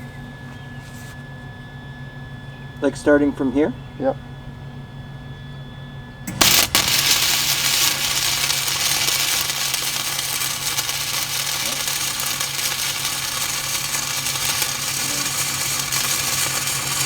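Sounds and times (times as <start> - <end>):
welder low hum: 6.2 - 17.0
welding arc crackling and sizzling: 6.3 - 17.0.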